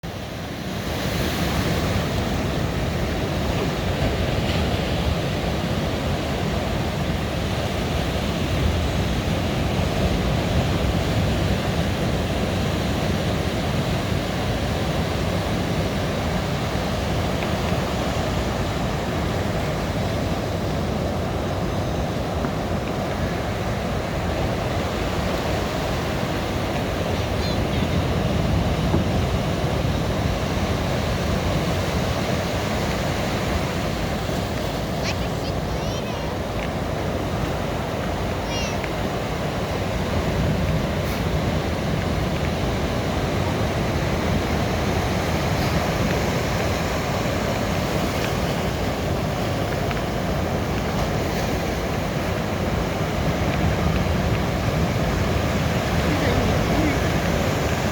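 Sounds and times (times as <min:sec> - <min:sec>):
sea waves washing onto shore: 0:00.0 - 0:57.9.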